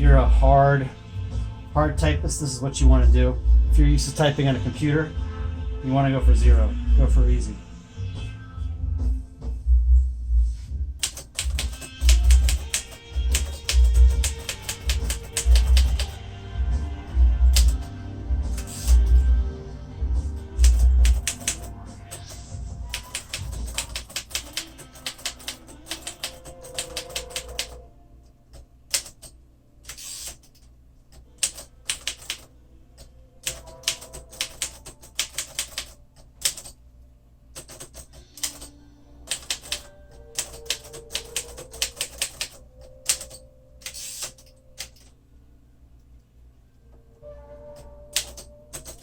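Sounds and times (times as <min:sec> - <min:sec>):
manual typewriter key strikes: 0:11.0 - 0:16.2, 0:17.5 - 0:17.9, 0:18.5 - 0:19.2, 0:20.5 - 0:27.8, 0:28.9 - 0:32.5, 0:33.4 - 0:36.8, 0:37.6 - 0:45.1, 0:48.1 - 0:49.0.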